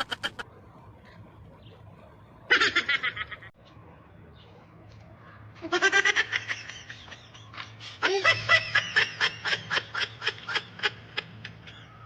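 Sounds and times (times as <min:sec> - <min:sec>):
person laughing in bursts: 0:00.0 - 0:00.4.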